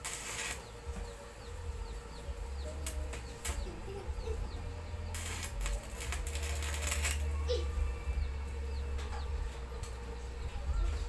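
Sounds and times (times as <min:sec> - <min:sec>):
bursts of hiss: 0:00.0 - 0:08.7
bird chirping: 0:00.0 - 0:11.0.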